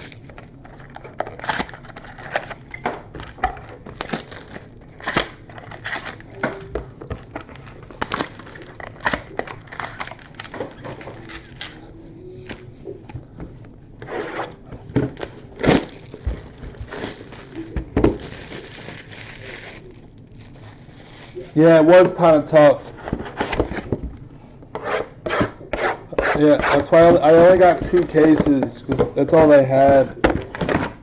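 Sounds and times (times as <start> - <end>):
card packaging torn and crinkled: 0.0 - 12.6, 15.0 - 21.5.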